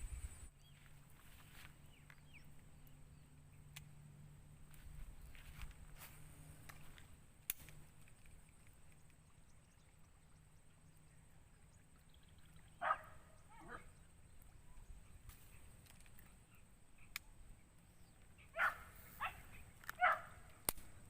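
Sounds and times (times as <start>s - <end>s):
dog barking: 12.8s - 13.8s, 18.5s - 20.4s.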